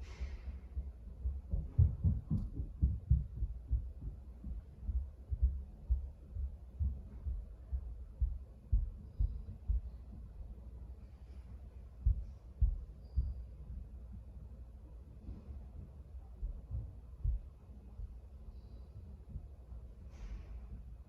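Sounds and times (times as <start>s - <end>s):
muffled footsteps through ceiling: 0.0s - 21.0s.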